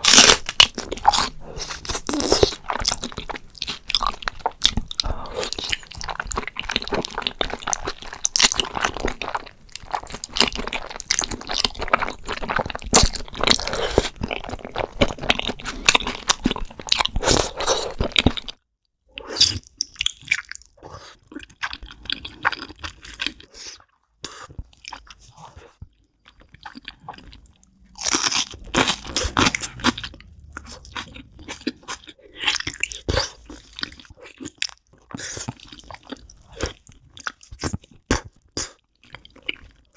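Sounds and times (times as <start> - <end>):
crunchy biting and chewing: 0.0 - 18.6, 19.3 - 39.9.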